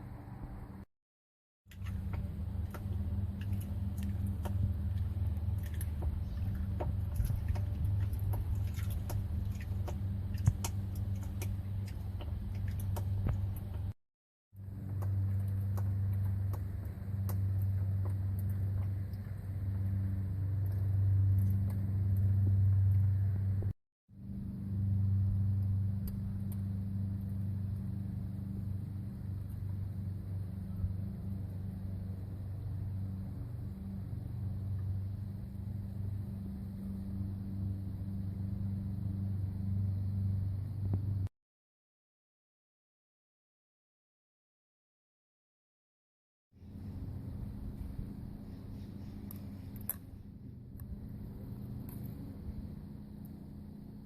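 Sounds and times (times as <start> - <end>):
van drivetrain droning: 1.7 - 14.0, 14.6 - 41.3.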